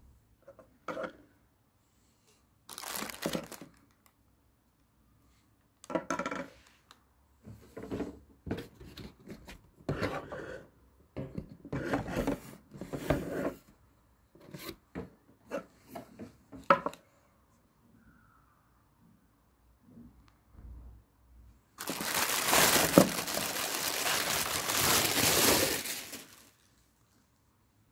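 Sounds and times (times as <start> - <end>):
packaging rustling and scraping: 2.7 - 3.8, 21.8 - 26.7.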